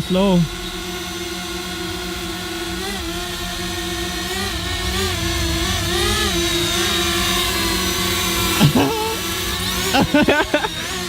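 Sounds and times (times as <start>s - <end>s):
drone propellers whining: 0.0s - 11.0s.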